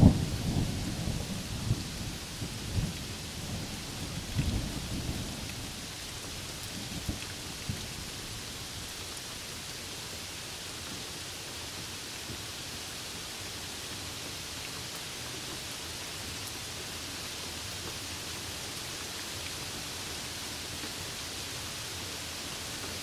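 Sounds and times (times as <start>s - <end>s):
thunder rumbling: 0.0s - 7.8s
steady rain: 0.0s - 23.0s.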